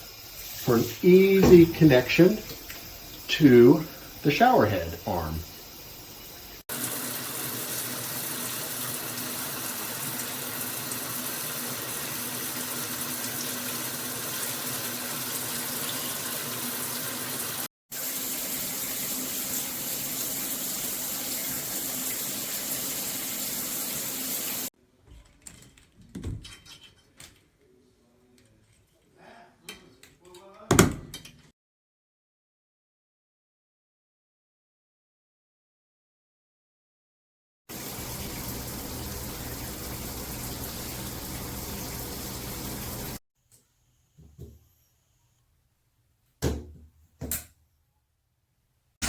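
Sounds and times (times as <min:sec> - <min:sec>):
shower head spraying water: 0:00.0 - 0:24.7, 0:37.7 - 0:43.2.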